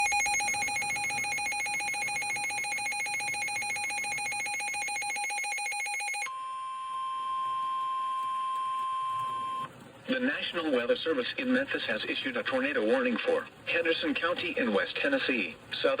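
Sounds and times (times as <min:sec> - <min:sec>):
steady high warning tone: 0:00.0 - 0:09.7
warbling electronic alarm tone: 0:00.0 - 0:09.7.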